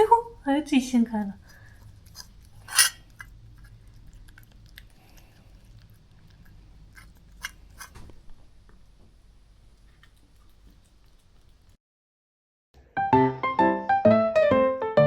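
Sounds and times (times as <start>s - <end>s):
cat chewing and clicking: 1.3s - 11.8s.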